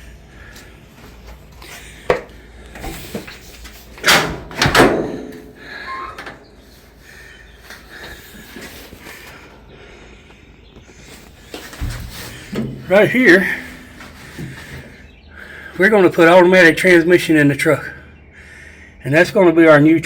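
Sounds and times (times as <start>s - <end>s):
metal door clunks: 4.0s - 6.5s, 11.8s - 14.9s.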